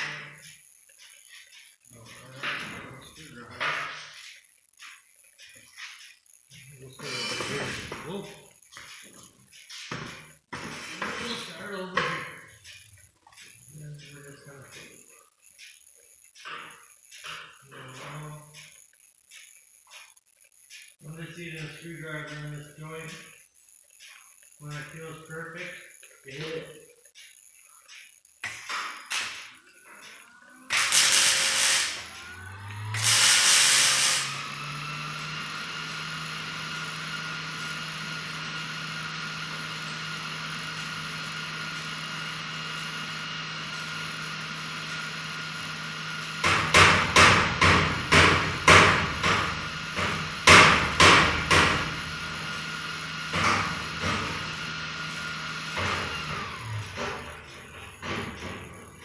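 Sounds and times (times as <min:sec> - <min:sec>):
welding crackling: 0:27.4 - 0:34.6
motor humming and whining: 0:29.1 - 0:59.0.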